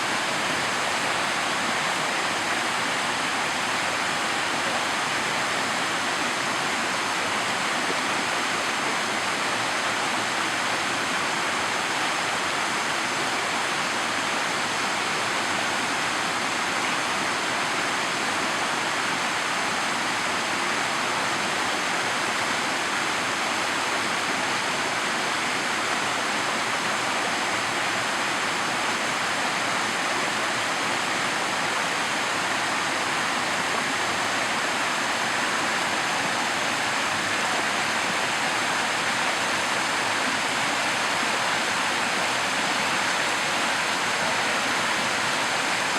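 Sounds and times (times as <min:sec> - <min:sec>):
waterfall rushing: 0:22.0 - 0:45.9.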